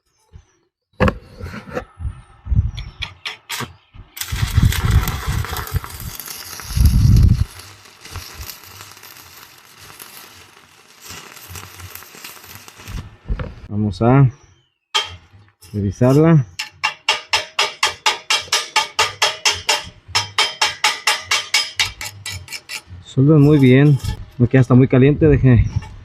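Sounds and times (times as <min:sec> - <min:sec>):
welding arc pops and sputters: 0:02.8 - 0:13.7, 0:15.0 - 0:22.8
welding arc crackling hiss: 0:04.2 - 0:13.2, 0:17.0 - 0:22.8, 0:23.4 - 0:24.2.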